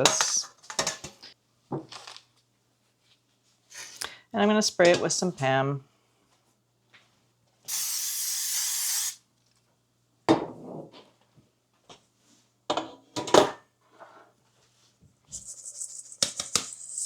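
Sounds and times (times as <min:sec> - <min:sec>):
aerosol spray hissing: 0:07.7 - 0:09.2.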